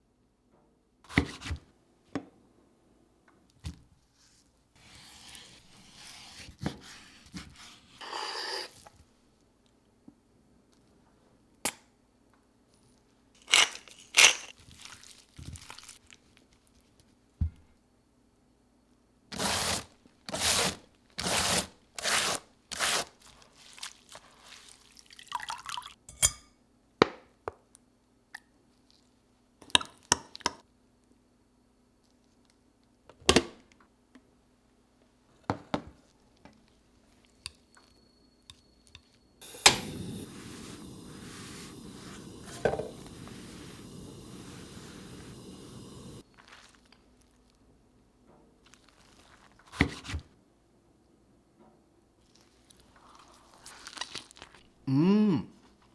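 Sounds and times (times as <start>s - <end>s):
handling noise: 13.4s - 14.6s, 39.4s - 46.2s
utensils and containers clicking: 13.4s - 14.6s.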